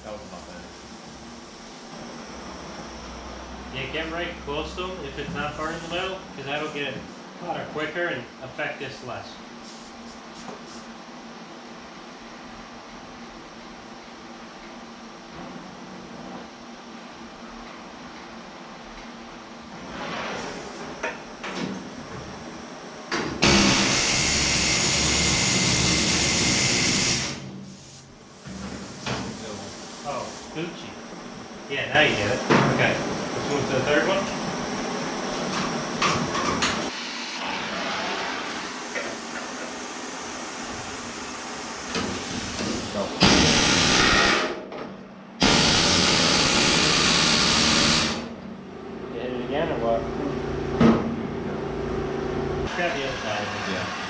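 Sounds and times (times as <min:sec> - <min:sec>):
pneumatic rivet hammer: 0:23.4 - 0:27.4, 0:41.9 - 0:44.6, 0:45.4 - 0:48.2
air hammer driving rivet: 0:43.2 - 0:44.5, 0:45.4 - 0:48.2.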